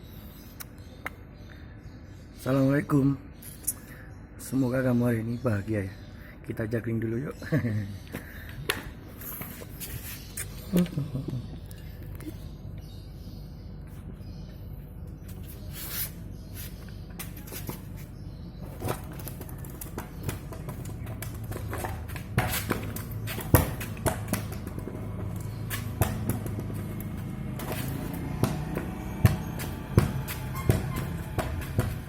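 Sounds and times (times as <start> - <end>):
balls thudding down: 18.6 - 32.0.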